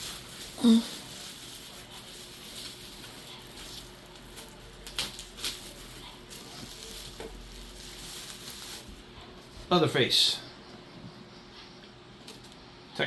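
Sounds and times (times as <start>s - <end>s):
rustling of boxes and wrapping: 0.0s - 10.2s.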